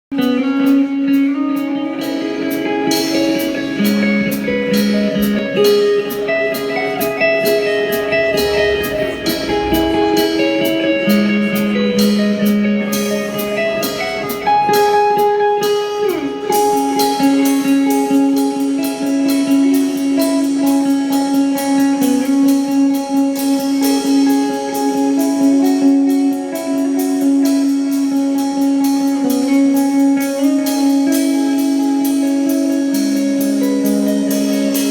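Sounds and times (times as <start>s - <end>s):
electric guitar notes: 0.1s - 34.9s
drum beat: 6.2s - 11.1s.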